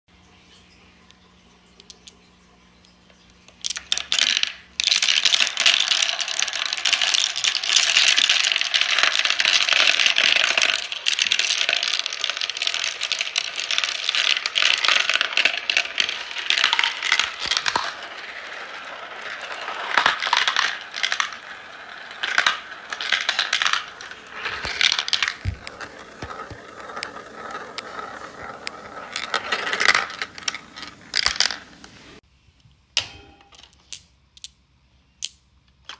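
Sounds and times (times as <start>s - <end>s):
marbles clattering down a run: 3.5s - 32.2s.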